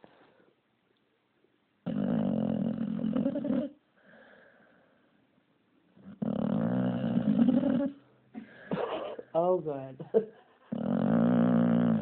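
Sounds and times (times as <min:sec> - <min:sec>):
quiet breath: 0:00.0 - 0:00.6, 0:03.9 - 0:05.4, 0:08.3 - 0:08.9
dog snoring: 0:01.8 - 0:03.8, 0:06.0 - 0:08.0, 0:10.7 - 0:12.0.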